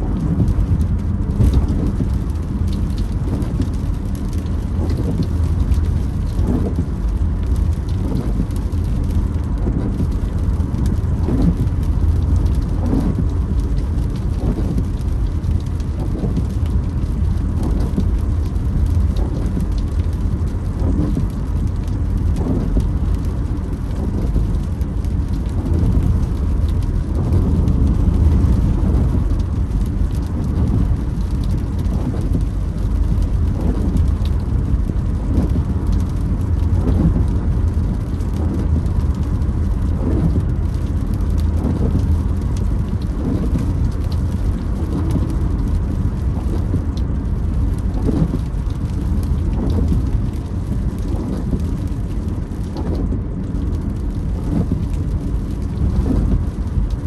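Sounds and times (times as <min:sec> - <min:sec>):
windshield wipers creaking: 0:00.0 - 0:56.7
car driving on wet road: 0:00.0 - 0:57.0
rain on car windshield: 0:00.0 - 0:57.0.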